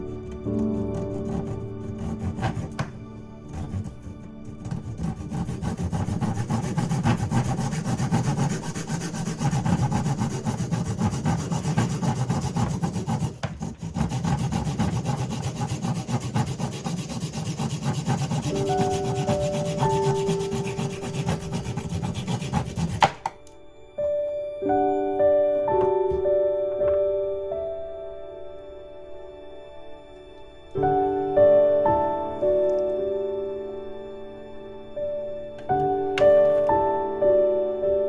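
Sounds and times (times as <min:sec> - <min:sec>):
saw cutting wood: 0:00.2 - 0:23.4
soft musical notes: 0:23.2 - 0:38.0.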